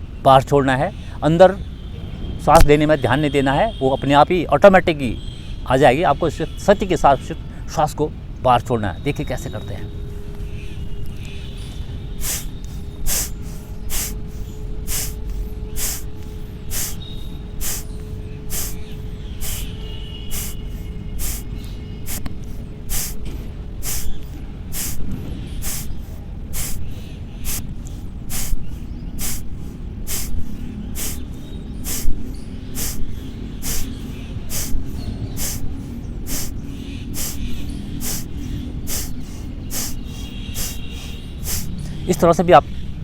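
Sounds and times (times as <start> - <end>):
sharp nasal exhalations: 12.2 - 42.0.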